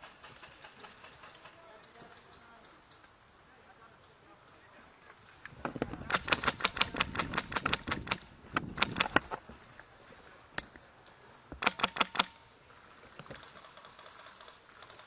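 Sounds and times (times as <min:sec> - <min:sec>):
airsoft gun firing: 0:06.1 - 0:09.2, 0:11.6 - 0:12.4.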